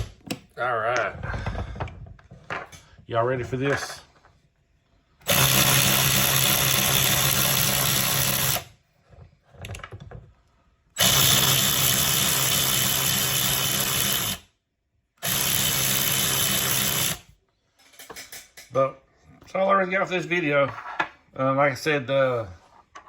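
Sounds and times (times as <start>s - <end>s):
small electric power tool running: 5.3s - 8.7s, 11.0s - 14.4s, 15.2s - 17.3s.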